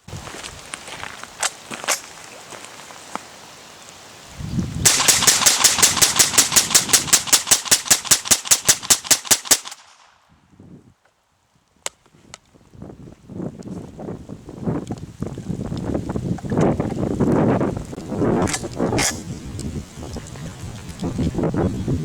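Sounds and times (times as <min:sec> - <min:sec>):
rifle rapid gunshots: 0:04.9 - 0:10.1.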